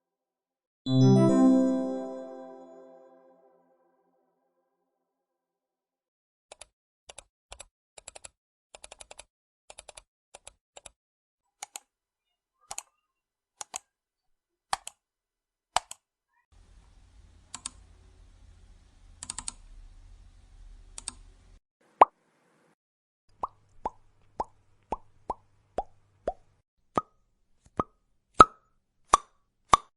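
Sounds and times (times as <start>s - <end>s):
low steady hum: 16.6s - 21.6s.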